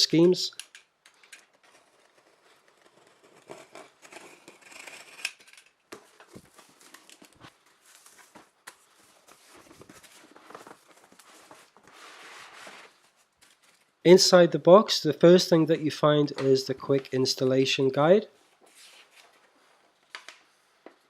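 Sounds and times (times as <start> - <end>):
cardboard packaging handled: 5.9 - 14.0.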